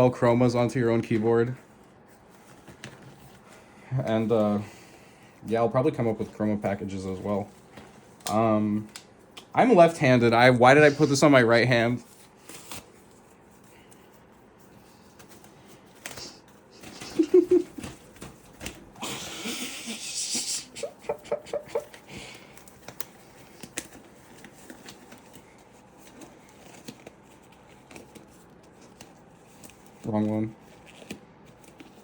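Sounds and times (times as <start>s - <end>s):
glove squeaks: 15.8s - 32.0s
glove rustling and clicks: 22.0s - 32.0s.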